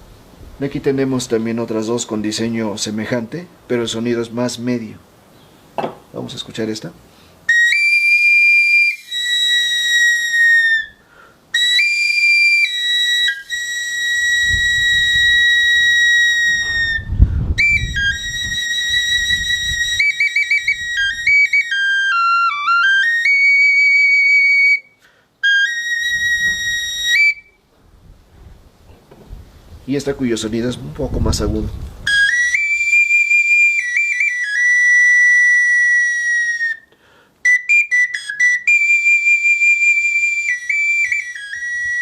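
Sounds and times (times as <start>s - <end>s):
low knock: 5.8s - 6.0s
flute high whistle-like notes: 7.5s - 27.6s, 32.1s - 42.0s.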